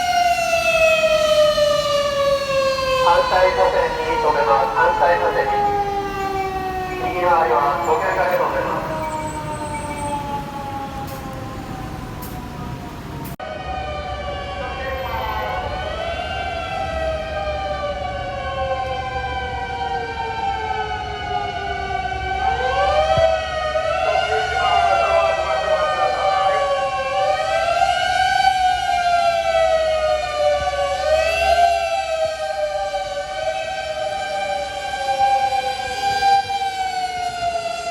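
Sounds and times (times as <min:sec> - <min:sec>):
fire engine sirens wailing: 0:00.0 - 0:37.9
truck engines rumbling: 0:00.0 - 0:37.9.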